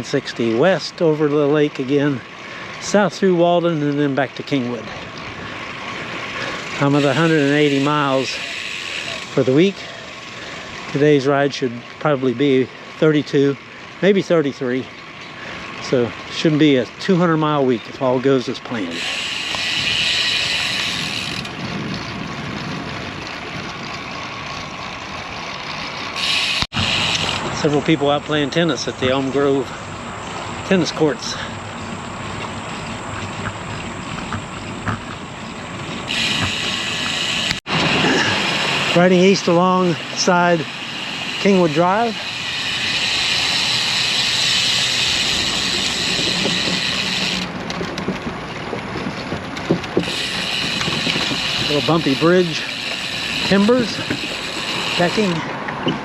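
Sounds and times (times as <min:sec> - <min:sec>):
bike tyre noise: 0:03.9 - 0:13.0, 0:18.4 - 0:56.0
bike tyre hiss: 0:18.9 - 0:21.4, 0:26.2 - 0:27.5, 0:36.1 - 0:39.0, 0:40.0 - 0:47.4, 0:50.0 - 0:55.4
wind rushing over microphone: 0:21.0 - 0:23.8.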